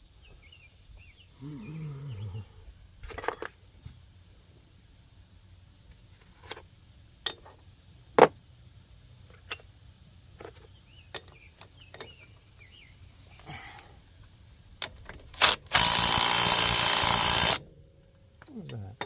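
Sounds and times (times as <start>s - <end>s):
metal tools clinking and knocking: 3.0s - 3.6s.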